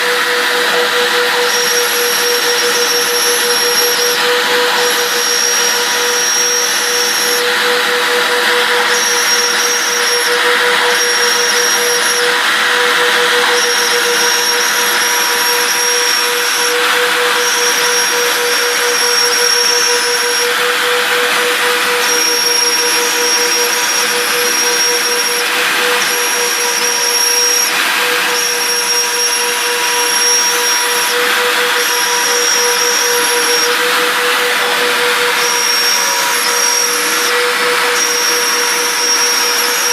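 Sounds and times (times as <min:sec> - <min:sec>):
higher whine: 0:00.0 - 0:39.9
router spindles whining: 0:00.0 - 0:39.9
rushing cutting noise: 0:00.0 - 0:39.9.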